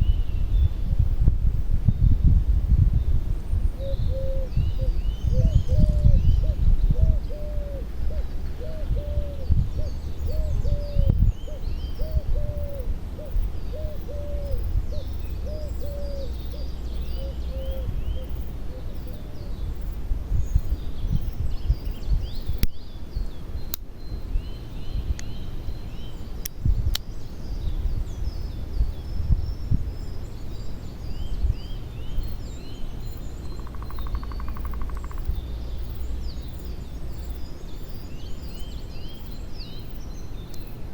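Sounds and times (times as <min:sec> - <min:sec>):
steady low rumble: 0:00.0 - 0:38.6
birds chirping: 0:03.4 - 0:40.9
bird repeating low call: 0:03.8 - 0:19.4, 0:33.4 - 0:35.6.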